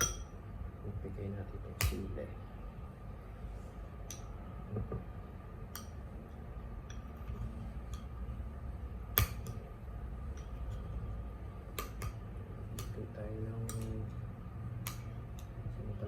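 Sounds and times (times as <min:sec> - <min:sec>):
steady low hum: 0:00.0 - 0:16.0
utensils clicking against a plate: 0:10.3 - 0:11.1, 0:11.7 - 0:14.2, 0:14.8 - 0:15.6.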